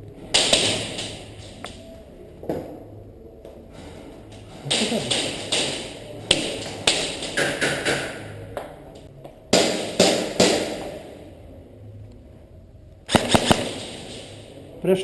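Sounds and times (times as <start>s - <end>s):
airsoft gun shots: 0.3s - 1.2s, 13.1s - 14.4s.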